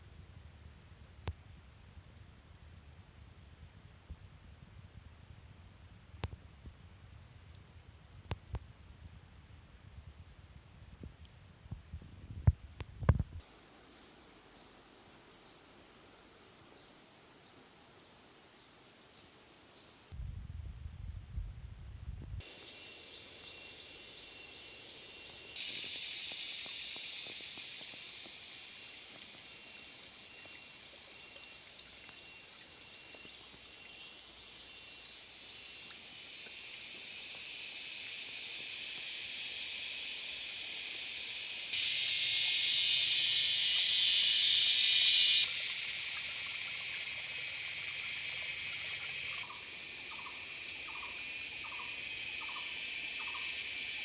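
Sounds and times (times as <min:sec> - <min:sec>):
insect chirps: 0:13.0 - 0:20.2, 0:22.4 - 0:54.0
insects buzzing chorus: 0:13.4 - 0:20.1, 0:22.4 - 0:54.0.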